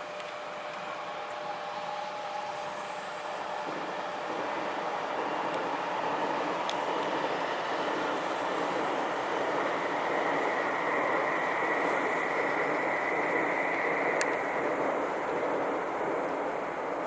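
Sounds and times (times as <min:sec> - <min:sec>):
train wheels rumbling on rails: 0:00.3 - 0:17.0.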